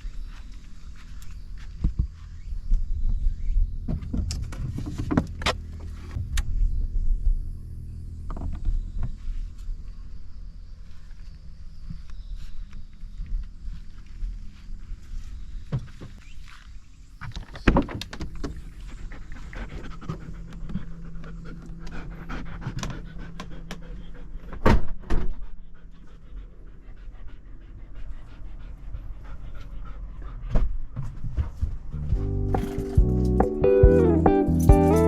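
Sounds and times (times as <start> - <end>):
dog panting: 18.9 - 24.6, 25.3 - 31.7.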